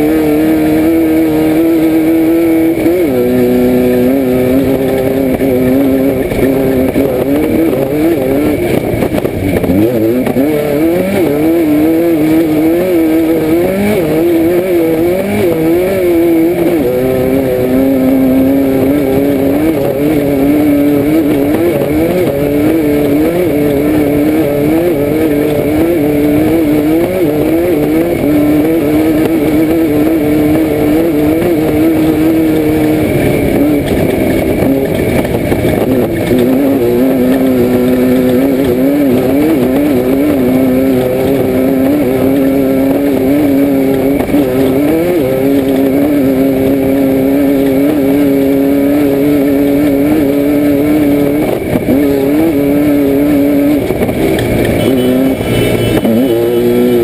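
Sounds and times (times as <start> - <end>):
engine revving: 0.0 - 57.0
rattling roar of car: 0.0 - 57.0.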